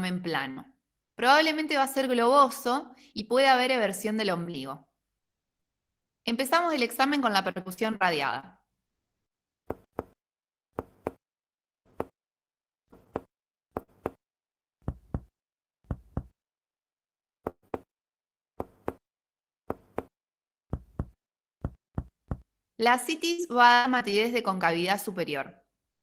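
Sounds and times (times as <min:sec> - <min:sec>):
finger tapping on belly: 0:14.8 - 0:15.3, 0:15.9 - 0:16.4, 0:20.7 - 0:22.4.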